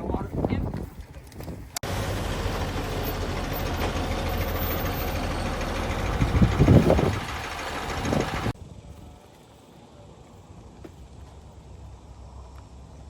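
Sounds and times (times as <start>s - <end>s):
engine idling: 1.8s - 8.6s.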